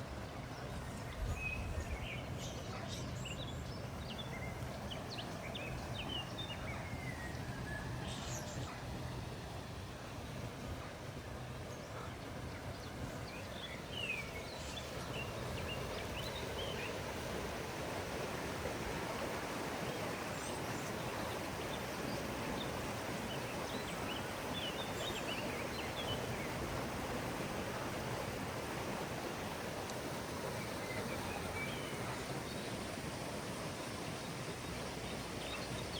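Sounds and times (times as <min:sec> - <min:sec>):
stream water flowing: 0:00.0 - 0:35.9
small birds chirping: 0:00.4 - 0:08.9, 0:11.7 - 0:17.2, 0:18.9 - 0:27.2.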